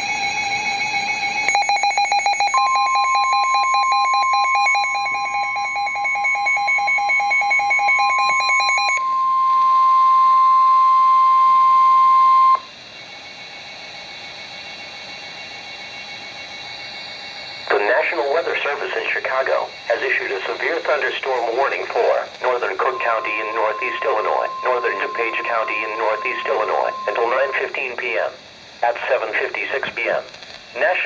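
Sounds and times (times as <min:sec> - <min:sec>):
steady alarm tone: 0:00.0 - 0:28.8
radio static hiss: 0:17.7 - 0:31.0
fast electronic beeping: 0:19.4 - 0:27.9.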